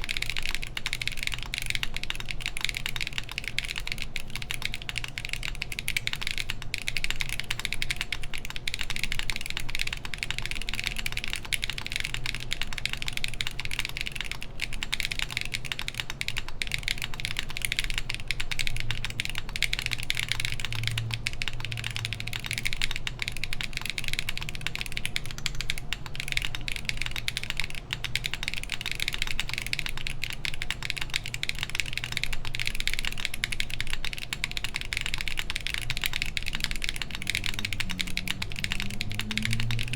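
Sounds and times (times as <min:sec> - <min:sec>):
mechanical keyboard typing: 0:00.0 - 0:39.9
fan running: 0:14.4 - 0:39.9.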